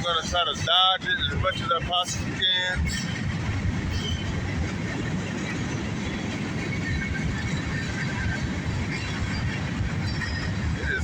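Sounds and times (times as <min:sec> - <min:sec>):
freight train wheels rumbling: 0:00.0 - 0:11.0.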